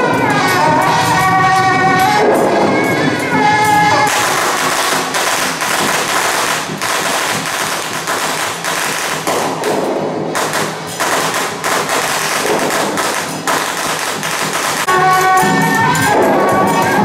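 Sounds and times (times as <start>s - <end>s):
faint procession band music: 0.0s - 17.0s
firecrackers crackling: 0.0s - 17.0s.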